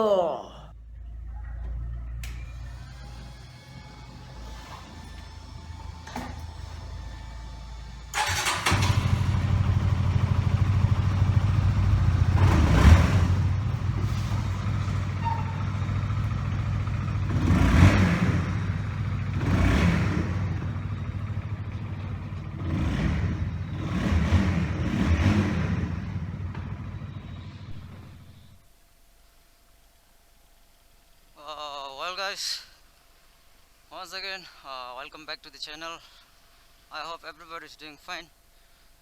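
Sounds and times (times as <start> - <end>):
motorcycle engine running: 5.2 - 28.5.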